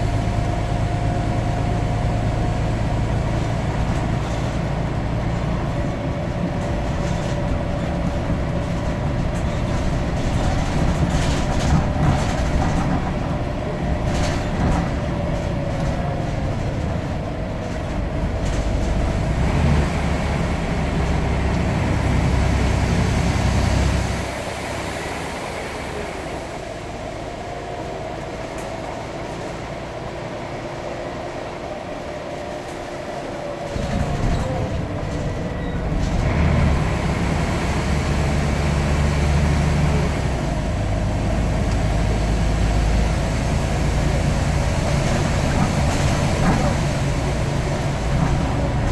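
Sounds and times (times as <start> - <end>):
bus engine rumble: 0.0 - 48.9
rattles: 3.4 - 19.4.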